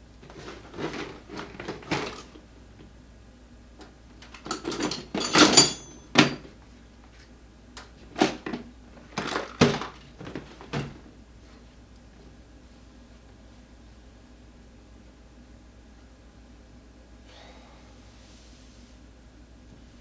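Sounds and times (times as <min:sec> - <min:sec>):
tools knocking and clicking: 0:04.3 - 0:06.5
metallic clatter: 0:04.4 - 0:06.4.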